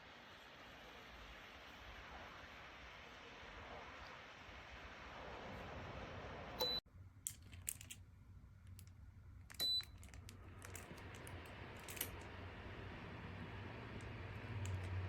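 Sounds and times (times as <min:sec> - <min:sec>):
plastic clicks and handling: 0:07.2 - 0:08.0, 0:08.6 - 0:12.3.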